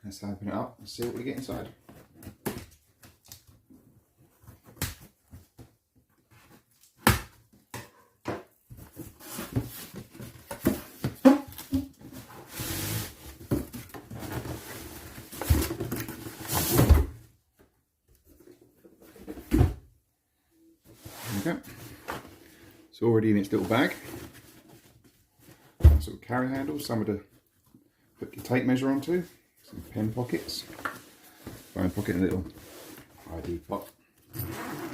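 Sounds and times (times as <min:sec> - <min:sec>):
cardboard and packaging rustling: 0:08.6 - 0:17.2, 0:23.4 - 0:25.8.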